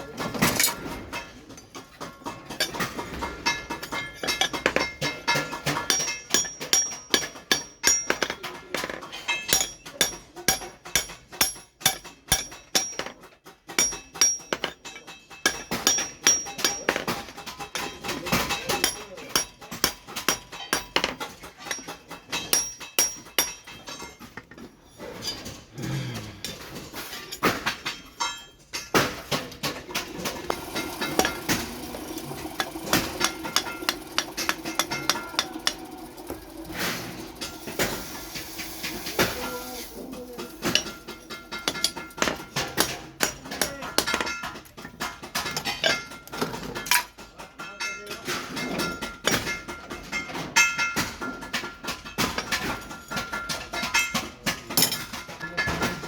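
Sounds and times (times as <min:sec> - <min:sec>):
hammer striking steel on anvil: 0:02.2 - 0:24.3, 0:30.0 - 0:47.1.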